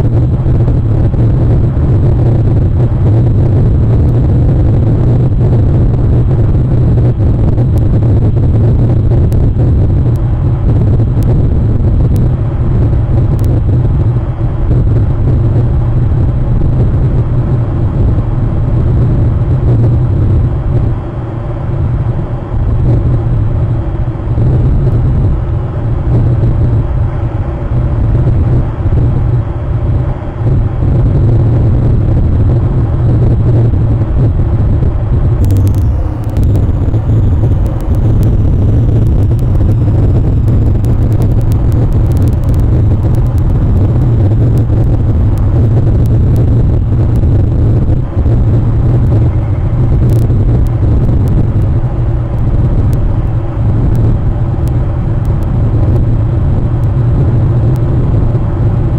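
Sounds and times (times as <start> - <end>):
loud low rumble: 0.0 - 58.9
faint ticks: 35.4 - 55.5.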